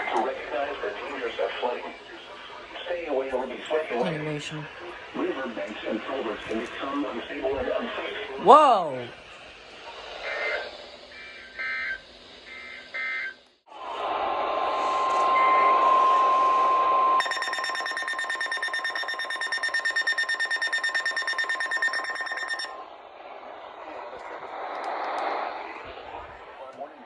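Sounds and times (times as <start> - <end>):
electronic alarm beeping rapidly: 17.2 - 22.7
steady alert tone: 17.2 - 22.7
two-tone data bursts: 17.2 - 22.7.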